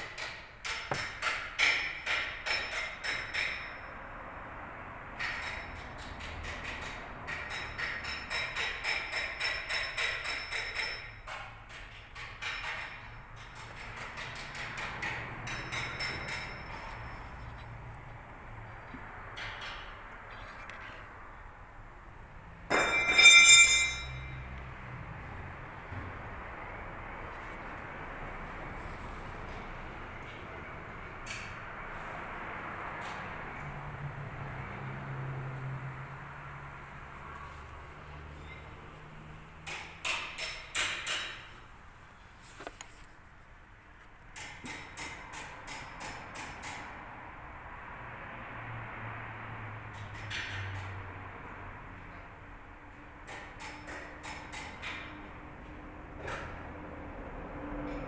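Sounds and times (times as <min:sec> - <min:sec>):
hammer tapping on metal: 0:00.0 - 0:04.0, 0:05.1 - 0:18.0, 0:39.6 - 0:41.5, 0:44.4 - 0:47.0, 0:53.3 - 0:55.2
metal striking metal: 0:22.7 - 0:24.6.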